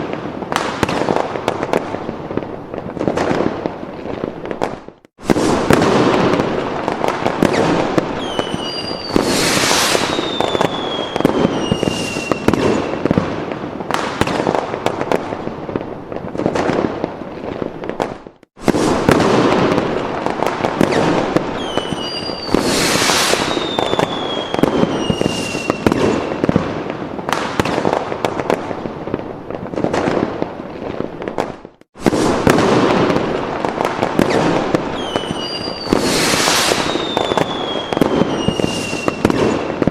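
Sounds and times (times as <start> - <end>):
fireworks bangs and crackling: 0.0 - 39.9
whistling rockets: 4.6 - 15.0, 18.0 - 26.6, 31.4 - 39.9.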